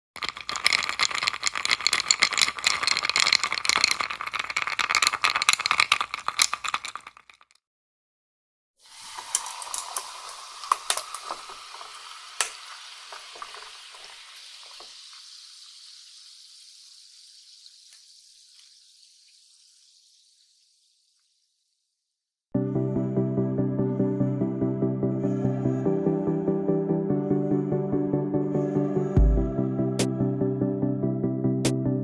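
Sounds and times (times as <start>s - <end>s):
melting ice crackling and popping: 0.2s - 7.6s, 9.0s - 21.4s.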